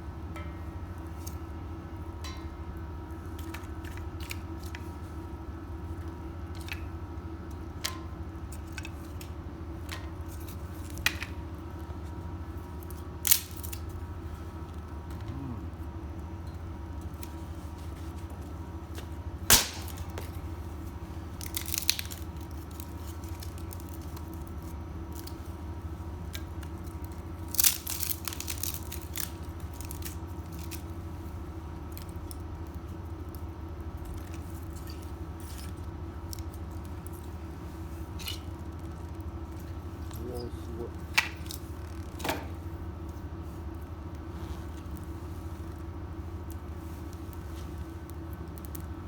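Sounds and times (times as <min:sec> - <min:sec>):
wood fire crackling: 0:00.0 - 0:49.0
sharp pop of fire: 0:19.5 - 0:20.4.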